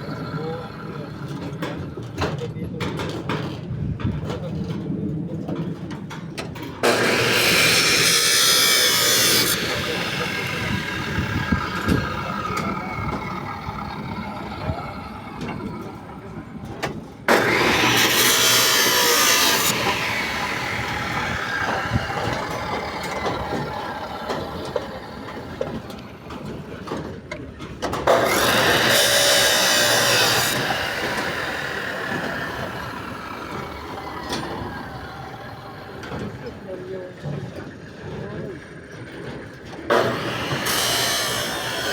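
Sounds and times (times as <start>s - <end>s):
harsh construction machine noise: 0.0s - 3.6s, 6.6s - 41.9s
knocks and scraping: 5.8s - 34.7s.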